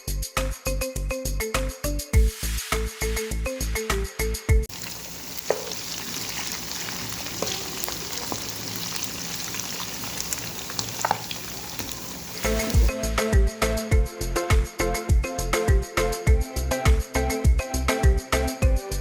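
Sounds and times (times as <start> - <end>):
background music with beat: 0.0 - 4.7, 12.4 - 19.0
food sizzling: 4.7 - 12.9.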